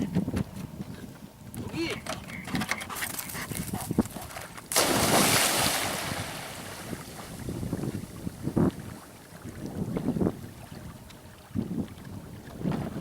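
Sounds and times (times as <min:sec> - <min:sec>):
dog splashing into water: 0:04.7 - 0:07.4.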